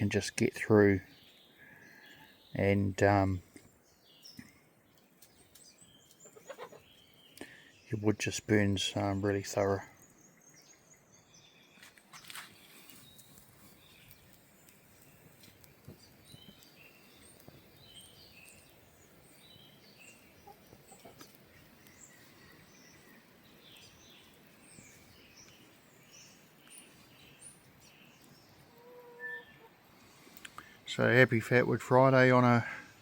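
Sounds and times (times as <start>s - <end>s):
faint clicks: 30.3s - 30.7s.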